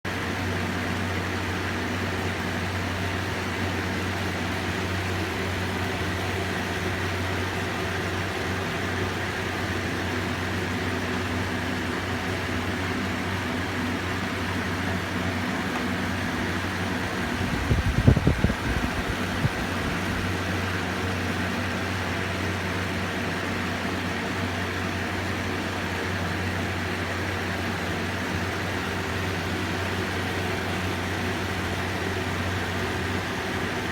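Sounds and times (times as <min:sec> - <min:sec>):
electric fan droning hum: 0:00.2 - 0:33.9
low thumping rumble: 0:17.2 - 0:20.1.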